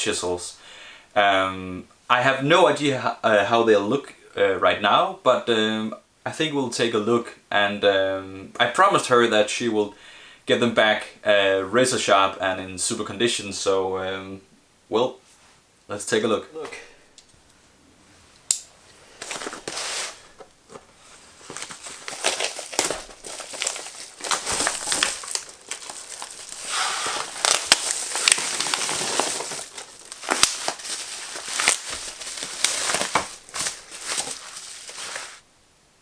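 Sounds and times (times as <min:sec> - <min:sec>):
packaging crinkling and rustling: 0:19.1 - 0:35.4.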